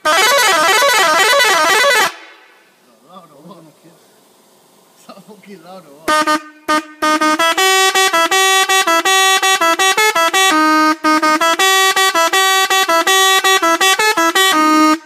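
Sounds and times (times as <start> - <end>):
musical air horn tune: 0.0 - 2.5, 6.1 - 15.0.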